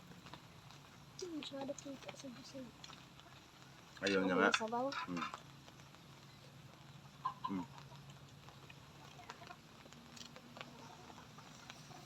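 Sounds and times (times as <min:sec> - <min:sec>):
chicken clucking: 0:07.2 - 0:08.0.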